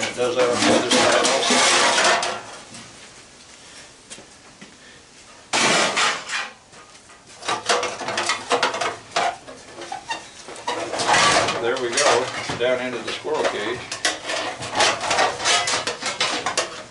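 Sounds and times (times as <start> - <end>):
loud metallic clank: 5.5 - 6.4.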